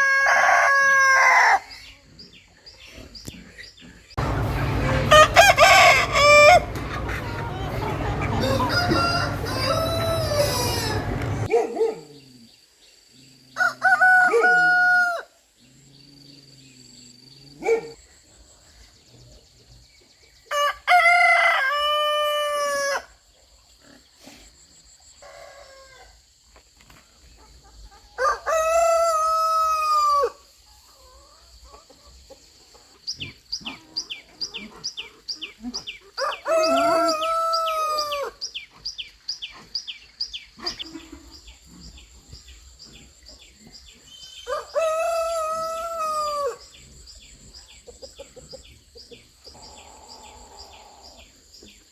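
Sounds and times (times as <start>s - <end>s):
roosters crowing: 0.0s - 1.9s, 4.2s - 11.5s, 13.6s - 15.4s, 20.5s - 23.2s, 28.2s - 30.5s, 36.1s - 38.4s, 44.3s - 46.9s.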